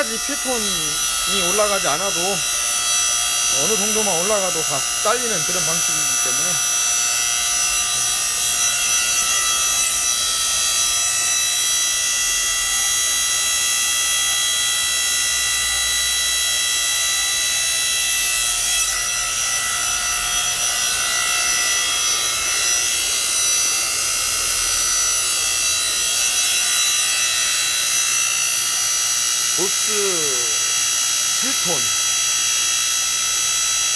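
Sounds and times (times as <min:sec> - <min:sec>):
hydraulic log splitter whining: 0:00.0 - 0:06.7.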